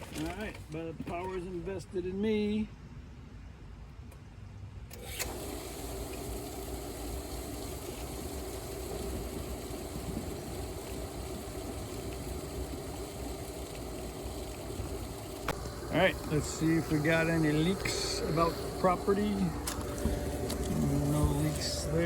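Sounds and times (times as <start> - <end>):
pool pump humming: 4.9 - 22.0
water rushing through hoses: 5.1 - 22.0.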